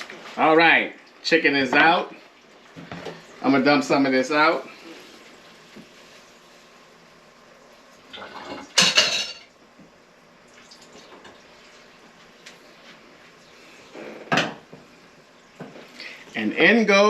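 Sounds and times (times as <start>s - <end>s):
pot and metal clattering: 8.1s - 9.5s.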